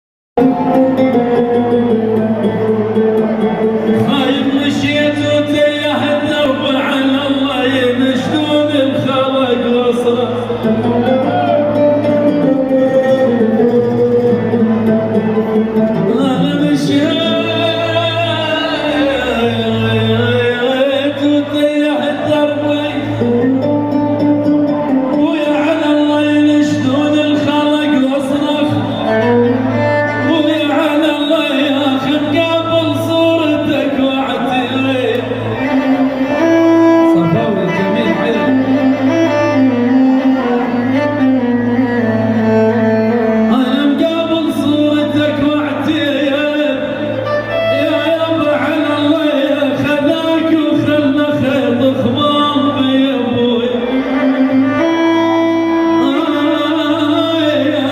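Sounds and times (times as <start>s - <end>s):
steady bass line: 0.4s - 25.8s
amplified band music: 0.4s - 57.9s
man singing long gliding notes: 0.4s - 57.9s
melody with gliding pitch: 28.3s - 43.5s.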